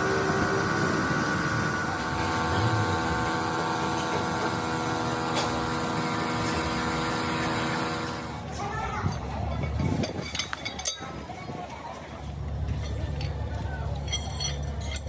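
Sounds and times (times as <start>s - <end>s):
machine humming: 0.0s - 8.4s.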